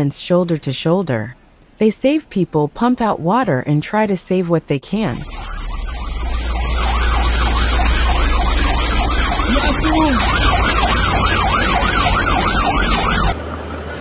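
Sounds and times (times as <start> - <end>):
outdoor noise: 0.0 - 14.0
heavy low rumble: 5.0 - 14.0
emergency siren yelping: 5.1 - 13.4.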